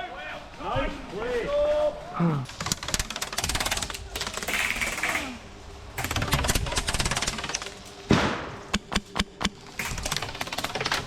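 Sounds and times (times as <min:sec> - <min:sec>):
airsoft guns firing: 0:02.5 - 0:05.4, 0:06.0 - 0:11.0.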